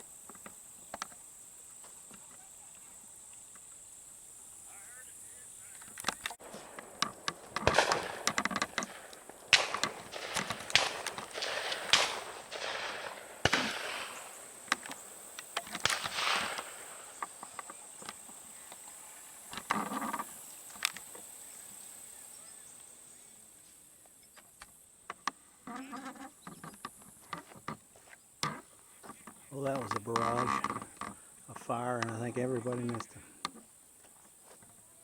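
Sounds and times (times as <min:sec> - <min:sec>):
insects droning: 0:00.0 - 0:35.0
echoing shotgun shots: 0:06.4 - 0:17.6.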